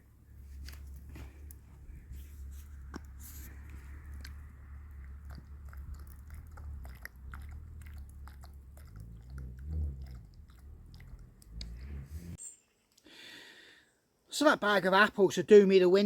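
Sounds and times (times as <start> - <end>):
steady low rumble: 0.0 - 12.4
crackling and crunching: 0.5 - 11.8.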